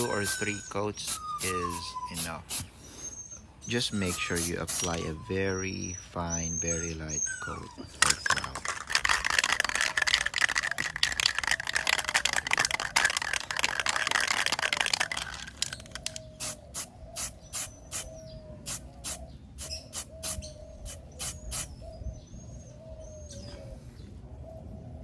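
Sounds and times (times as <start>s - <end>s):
aerosol spray can hissing: 1.0s - 2.7s, 4.1s - 5.0s, 16.4s - 18.1s, 18.7s - 21.7s.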